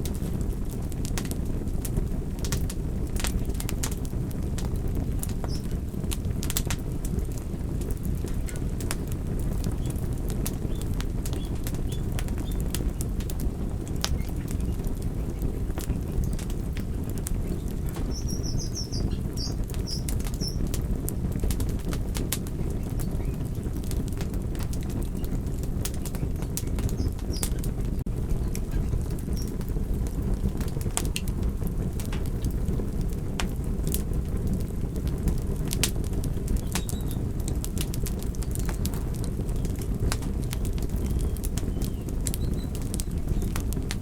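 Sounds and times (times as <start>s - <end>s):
wood fire crackling and popping: 0.0s - 44.0s
sharp pops and snaps: 5.3s - 6.8s, 17.5s - 20.8s, 35.2s - 44.0s.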